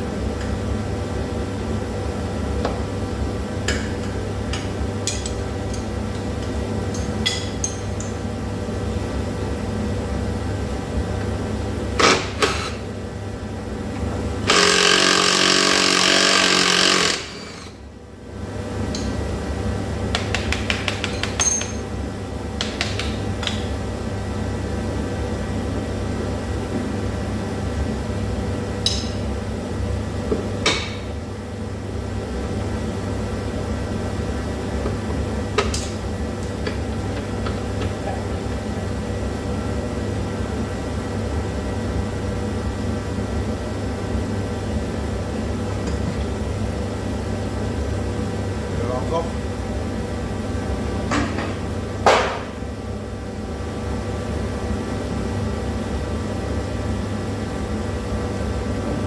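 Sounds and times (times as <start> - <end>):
power tool running: 12.0 - 12.9, 14.4 - 17.9
hand tools clicking and knocking: 20.1 - 21.8.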